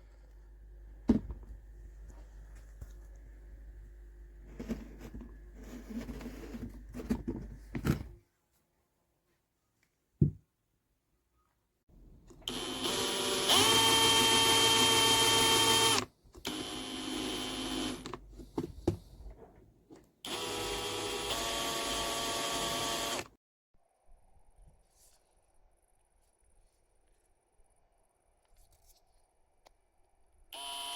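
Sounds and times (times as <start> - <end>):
drill clicks: 12.3 - 18.2, 20.3 - 23.3
cordless drill motor whining: 12.4 - 18.2, 20.3 - 23.3, 30.6 - 30.9.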